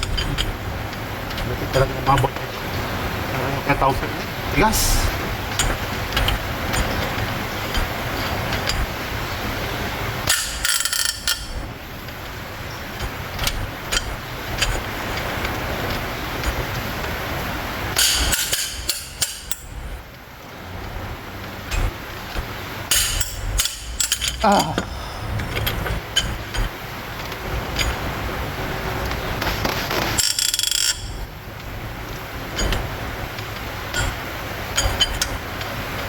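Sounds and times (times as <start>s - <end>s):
workshop background noise: 0.0s - 36.0s
metal tools clinking on engine parts: 10.2s - 11.6s, 18.0s - 19.7s, 22.9s - 26.7s, 30.2s - 31.2s, 33.9s - 35.4s.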